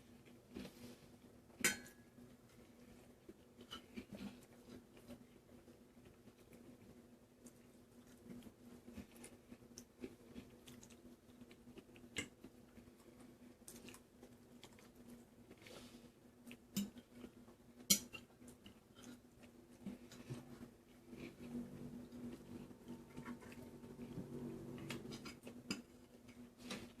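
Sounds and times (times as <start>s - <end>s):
soft chewing: 0.0s - 27.0s
cutlery clicking on plate: 17.9s - 18.2s
faint hum: 18.4s - 26.9s.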